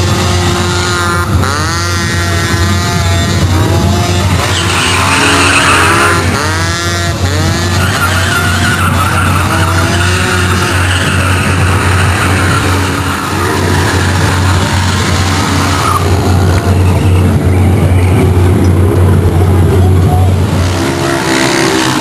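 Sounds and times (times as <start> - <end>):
vehicle engines revving: 0.0 - 22.0
tyre squeal: 4.2 - 6.5, 7.3 - 18.4
deep low hum: 10.3 - 20.9.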